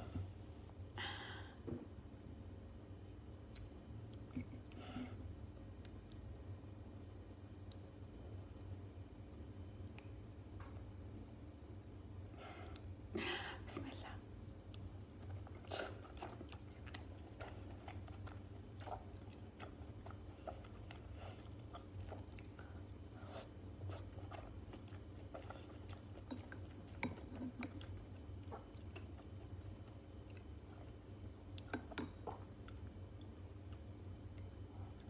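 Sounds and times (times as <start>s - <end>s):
faint low hum: 0.0s - 35.0s
chewing and biting food: 14.7s - 31.0s.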